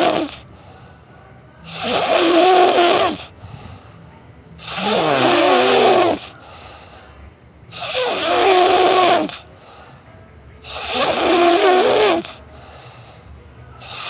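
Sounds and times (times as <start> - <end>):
long rattling snores: 0.0 - 0.6, 1.7 - 3.6, 4.6 - 6.9, 7.7 - 9.8, 10.6 - 13.1, 13.8 - 14.0.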